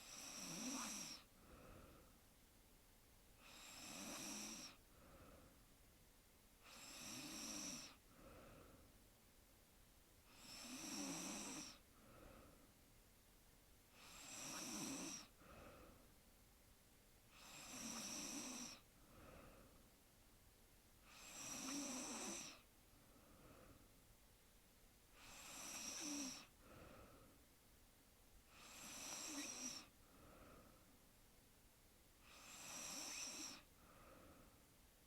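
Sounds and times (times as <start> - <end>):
woman snoring faintly: 0.0 - 1.3, 3.4 - 4.8, 6.7 - 8.0, 10.3 - 11.8, 14.0 - 15.3, 17.3 - 18.9, 21.1 - 22.7, 25.2 - 26.5, 28.5 - 29.9, 32.2 - 33.7
faint short breaths: 1.2 - 2.2, 8.1 - 9.0, 11.8 - 12.8, 15.2 - 16.1, 19.0 - 19.9, 26.4 - 27.4, 29.4 - 31.0, 33.5 - 34.7.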